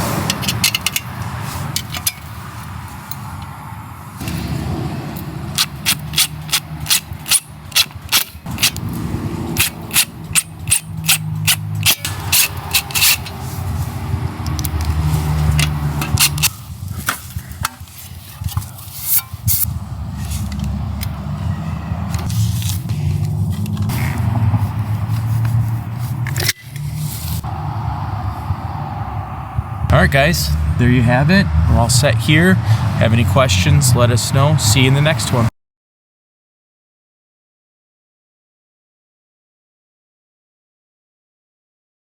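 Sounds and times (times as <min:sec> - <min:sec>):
sharp clicks: 0:05.2 - 0:09.0
steady low hum: 0:08.3 - 0:33.5.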